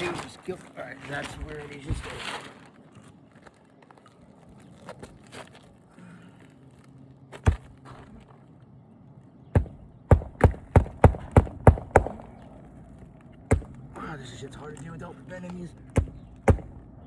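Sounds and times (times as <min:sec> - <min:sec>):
hammer striking nail: 0:09.6 - 0:12.3, 0:13.5 - 0:14.1, 0:15.9 - 0:16.8.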